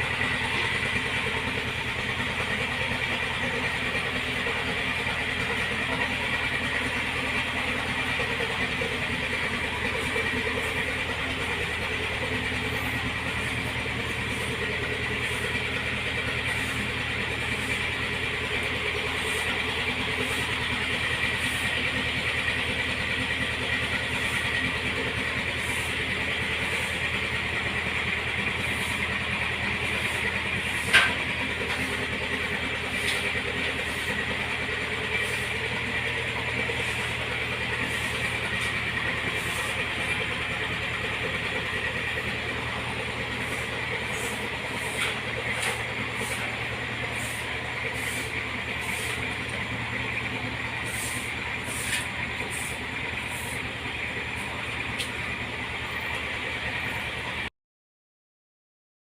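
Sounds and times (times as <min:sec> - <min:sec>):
tractor diesel engine idling: 0:00.0 - 0:57.5.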